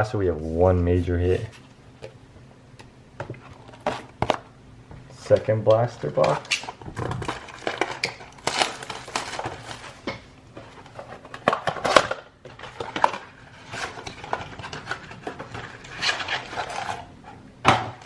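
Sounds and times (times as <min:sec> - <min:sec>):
cardboard and foil rustling: 0:05.2 - 0:18.0.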